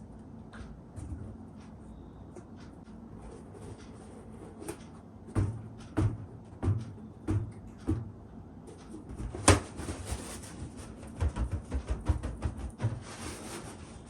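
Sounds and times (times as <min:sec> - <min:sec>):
balloons knocking and rustling: 0:09.1 - 0:14.0.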